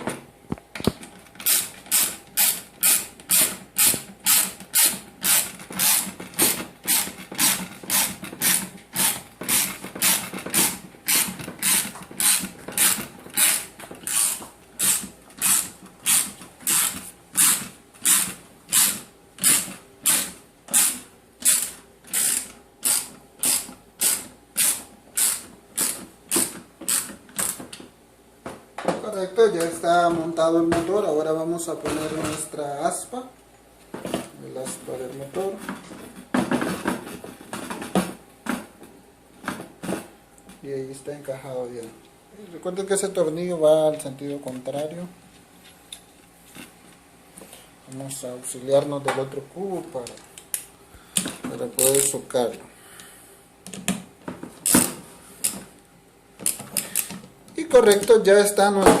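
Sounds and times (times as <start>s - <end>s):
ratchet wrench clicking: 11.1s - 27.6s.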